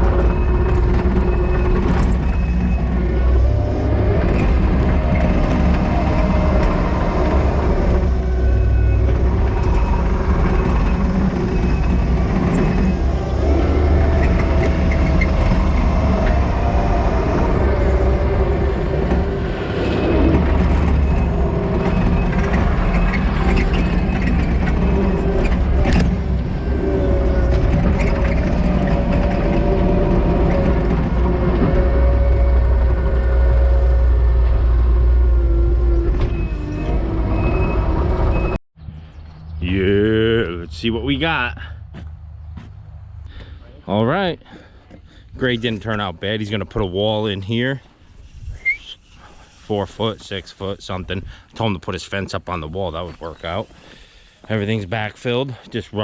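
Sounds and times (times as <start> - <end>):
tracks clicking and squeaking: 0.0 - 38.6, 44.5 - 56.0
diesel loader engine under load: 0.0 - 40.3.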